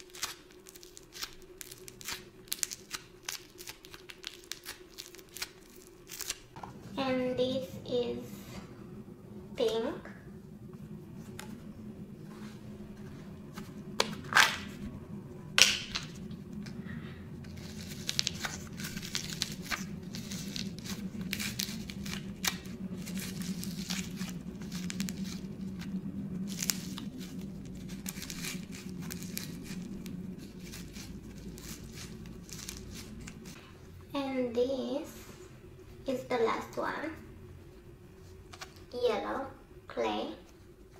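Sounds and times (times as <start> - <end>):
plastic packaging tearing: 0.0 - 6.5, 17.5 - 25.5, 26.5 - 33.6
plastic packaging crinkling: 0.0 - 6.6, 17.4 - 25.8, 26.5 - 33.6.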